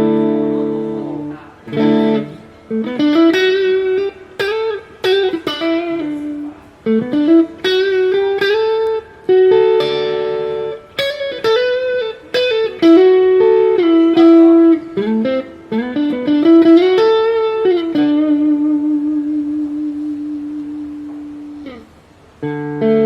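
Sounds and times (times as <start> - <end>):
electric guitar lead line: 0.0 - 23.0.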